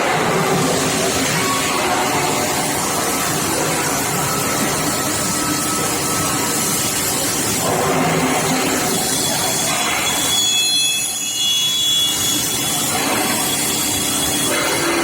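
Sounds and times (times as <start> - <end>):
steady machinery noise: 0.0 - 15.0.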